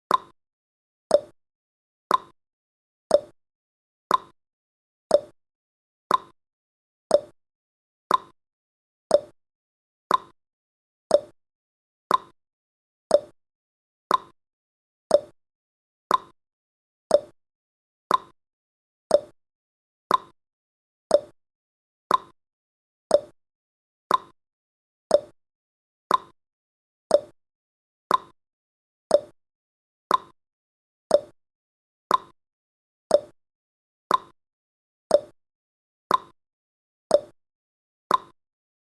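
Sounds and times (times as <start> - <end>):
timer ticking: 0.1 - 0.3, 1.1 - 1.3, 2.1 - 2.3, 3.1 - 3.3, 4.1 - 4.3, 5.1 - 5.3, 6.1 - 6.4, 7.1 - 7.4, 8.1 - 8.4, 9.1 - 9.4, 10.1 - 10.4, 11.1 - 11.4, 12.1 - 12.4, 13.1 - 13.4, 14.1 - 14.4, 15.1 - 15.4, 16.1 - 16.4, 17.1 - 17.4, 18.1 - 18.4, 19.1 - 19.4, 20.1 - 20.4, 21.1 - 21.4, 22.1 - 22.4, 23.1 - 23.4, 24.1 - 24.4, 25.1 - 25.4, 26.1 - 26.4, 27.1 - 27.4, 28.1 - 28.4, 29.1 - 29.4, 30.1 - 30.4, 31.1 - 31.4, 32.1 - 32.4, 33.1 - 33.4, 34.1 - 34.4, 35.1 - 35.4, 36.1 - 36.4, 37.1 - 37.4, 38.1 - 38.4.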